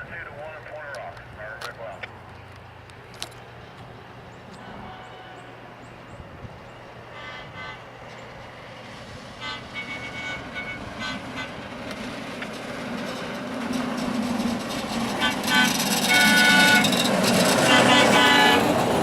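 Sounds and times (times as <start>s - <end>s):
vehicle rumble: 0.0s - 19.0s
vehicle horn blasts: 4.6s - 5.5s, 7.1s - 7.9s, 9.4s - 11.7s, 15.2s - 17.0s, 17.6s - 18.7s.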